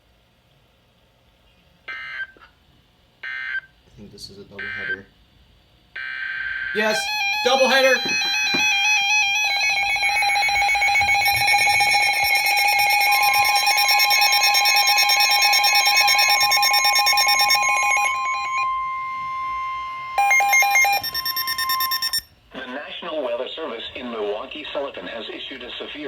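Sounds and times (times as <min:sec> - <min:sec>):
pulsing electronic alarm: 0:04.6 - 0:05.0, 0:05.9 - 0:22.4.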